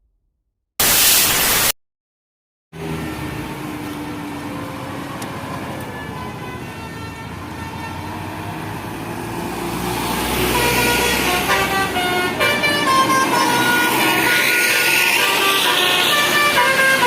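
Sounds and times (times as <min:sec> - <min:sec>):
bus engine running: 0:02.8 - 0:17.0
musical bus horn playing a tune: 0:05.9 - 0:08.2, 0:10.2 - 0:17.0.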